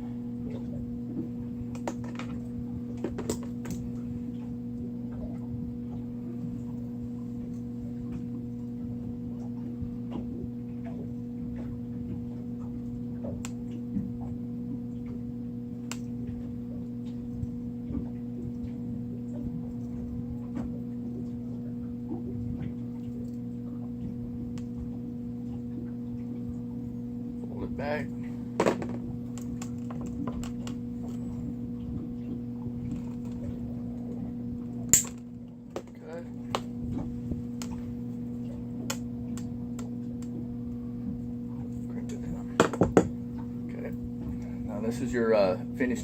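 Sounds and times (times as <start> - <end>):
steady low hum: 0.0 - 46.0
clicks of wire and hook: 34.9 - 36.7.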